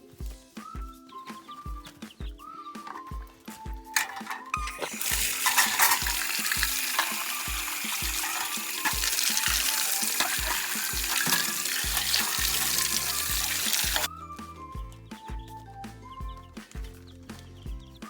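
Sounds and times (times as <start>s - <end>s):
background music with steady beat: 0.0s - 18.0s
water running from a tap: 4.0s - 14.1s.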